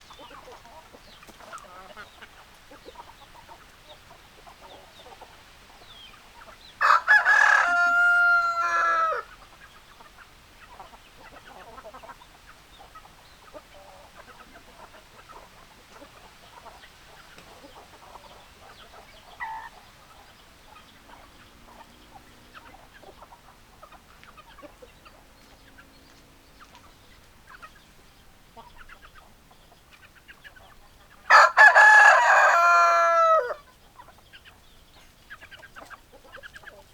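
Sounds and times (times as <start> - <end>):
hens clucking faintly: 0.0 - 36.9
rooster crowing: 6.8 - 9.3, 31.3 - 33.6.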